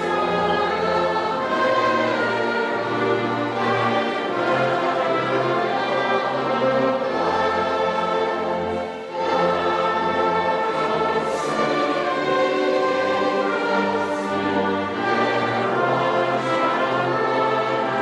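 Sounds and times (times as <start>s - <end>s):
orchestra playing sustained chords: 0.0s - 18.0s.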